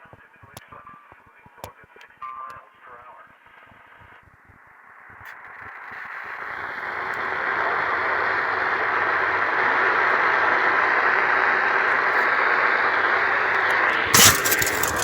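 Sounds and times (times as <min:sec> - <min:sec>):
radio static hiss: 0:05.1 - 0:15.0.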